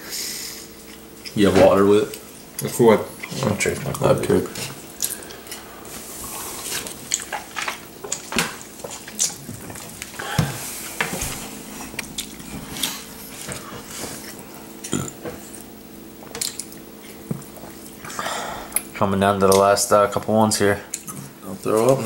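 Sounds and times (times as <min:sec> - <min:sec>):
steady hum: 0:00.0 - 0:22.0
person chewing food: 0:04.8 - 0:18.9.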